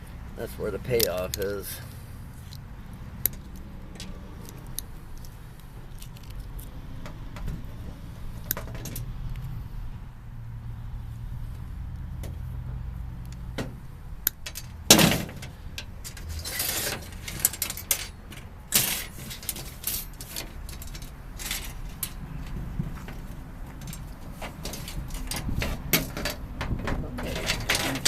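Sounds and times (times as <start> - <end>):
metal parts and tools clinking: 14.3 - 28.0.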